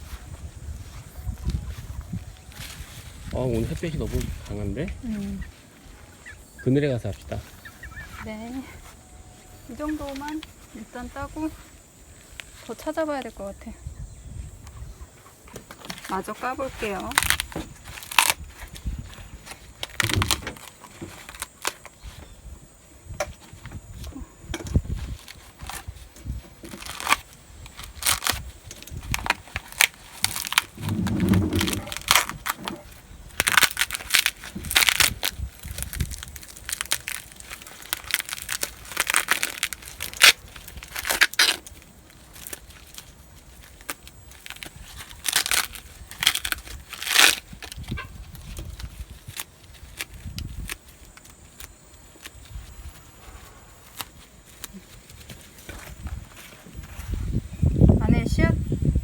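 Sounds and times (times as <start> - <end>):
dried gourd skin cracking: 15.6 - 22.2, 23.4 - 57.1.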